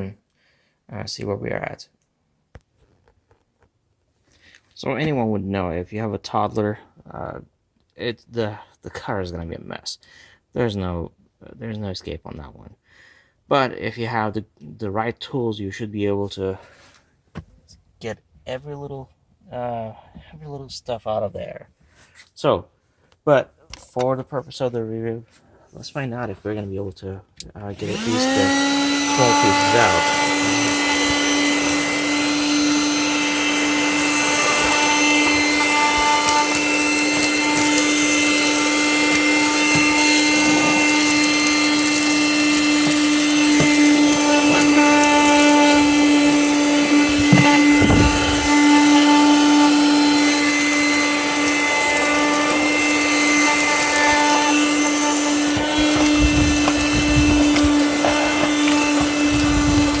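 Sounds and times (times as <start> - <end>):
handheld vacuum running: 27.8 - 60.0
low thumps: 46.9 - 48.7, 55.2 - 60.0.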